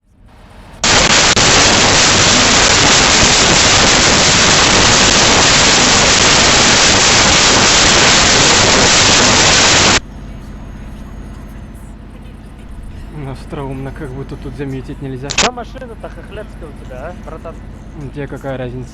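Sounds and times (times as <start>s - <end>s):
loud static hiss: 0.8s - 10.0s, 15.3s - 15.8s.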